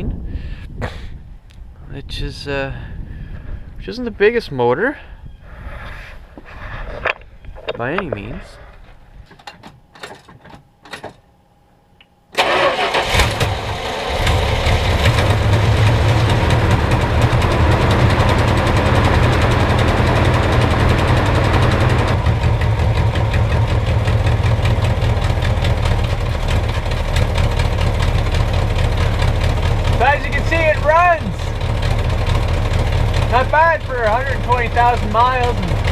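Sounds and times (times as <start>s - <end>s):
starter motor cranking: 12.4s - 15.9s
car engine idling: 12.4s - 35.9s.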